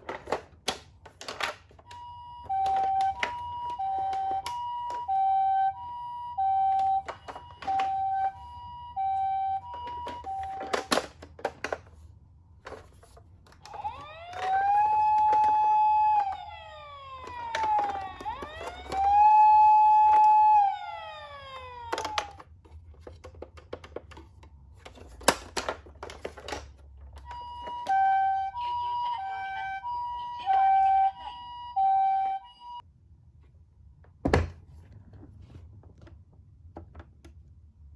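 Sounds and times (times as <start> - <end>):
toy ambulance siren: 1.2 - 11.3, 13.6 - 22.5, 27.2 - 32.8
toy clicks and knocks: 12.7 - 20.4.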